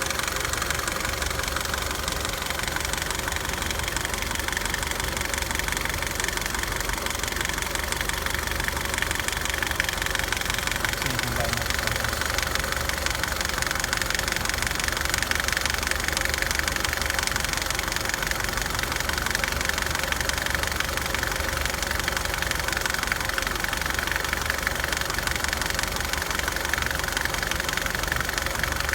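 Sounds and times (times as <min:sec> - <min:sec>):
car engine idling: 0:00.0 - 0:28.9
rapid engine clicking: 0:00.0 - 0:28.9.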